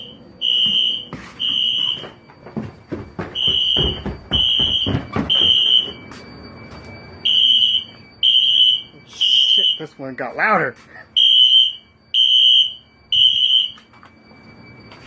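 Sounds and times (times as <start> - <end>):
fire alarm beeping: 0.0 - 15.0
handling thuds and knocks: 0.7 - 6.1.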